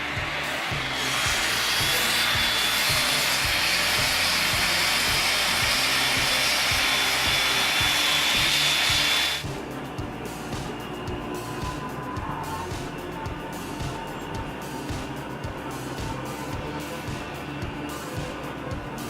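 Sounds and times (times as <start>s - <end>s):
angle grinder whining: 0.0s - 9.5s
background music with beat: 0.0s - 19.0s.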